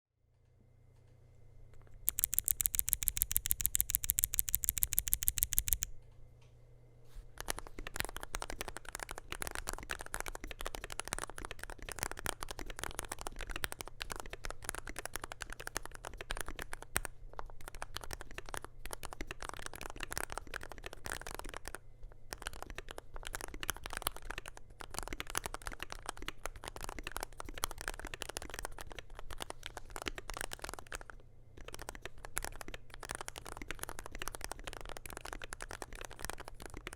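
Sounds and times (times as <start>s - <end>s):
keyboard keystroke clicks: 2.1s - 5.9s.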